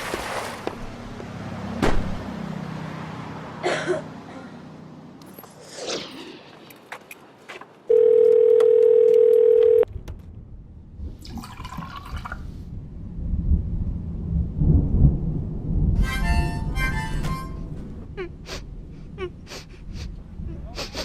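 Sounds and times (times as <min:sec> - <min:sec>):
low rumbling noise: 0:09.9 - 0:20.6.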